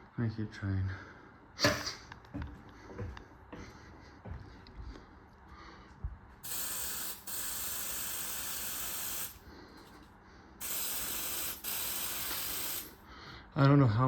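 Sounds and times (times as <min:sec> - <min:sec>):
aerosol spray hissing: 0:06.4 - 0:09.4, 0:10.6 - 0:13.0.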